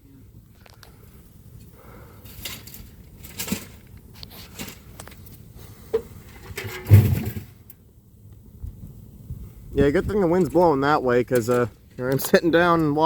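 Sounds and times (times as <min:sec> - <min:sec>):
fire crackling and popping: 0:00.0 - 0:13.0
heavy thump: 0:06.7 - 0:07.6.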